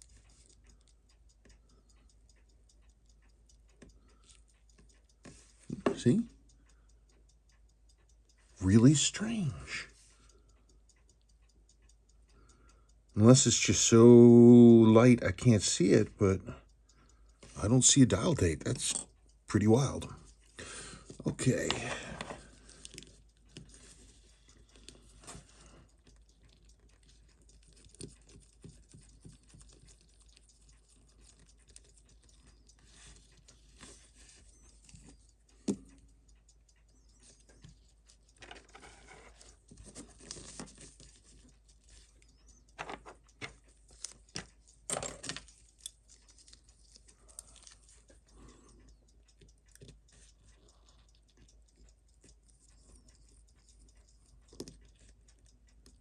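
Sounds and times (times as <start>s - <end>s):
small tools clicking and tapping: 17.3s - 56.0s.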